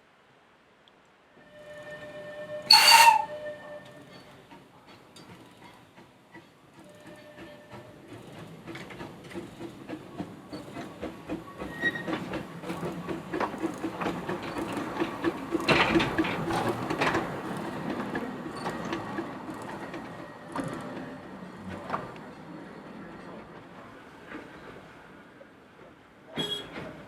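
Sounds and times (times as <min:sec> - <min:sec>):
small train running: 0:01.4 - 0:27.0
wheels clicking over rails: 0:06.9 - 0:22.4.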